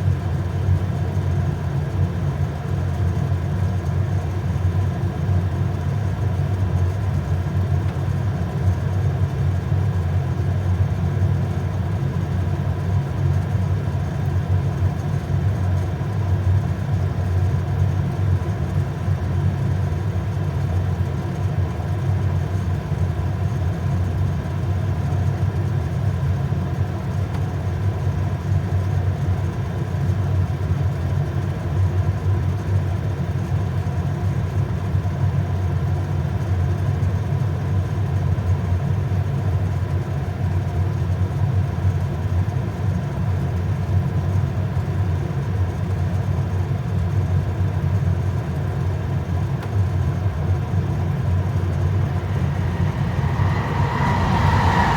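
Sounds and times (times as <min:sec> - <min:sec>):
water heater low drone: 0:50.5 - 0:54.9.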